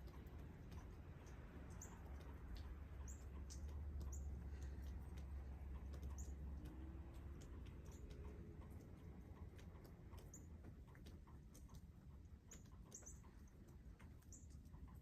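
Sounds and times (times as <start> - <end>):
faint ticks: 0.0 - 15.0
small bird chirping: 0.1 - 4.9, 5.8 - 6.8, 12.5 - 14.7.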